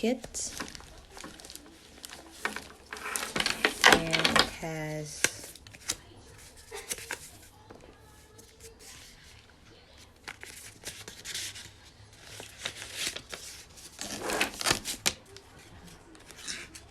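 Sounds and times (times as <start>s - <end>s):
bag and packaging rustling: 0.0s - 9.4s.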